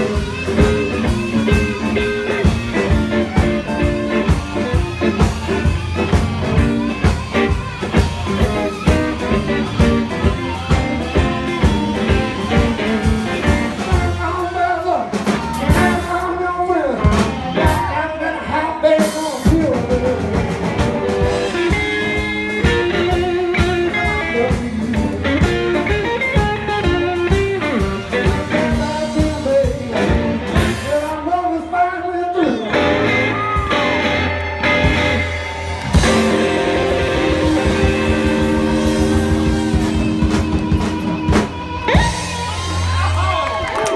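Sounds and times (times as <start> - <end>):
blues band playing: 0.0 - 43.9
person singing: 6.6 - 22.0, 35.9 - 42.8.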